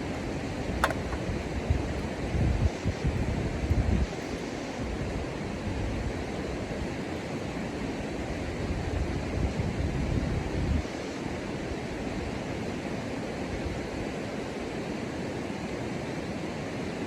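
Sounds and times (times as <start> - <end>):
wind buffeting microphone: 0.0 - 11.1
steady rushing outdoor noise: 0.0 - 17.0.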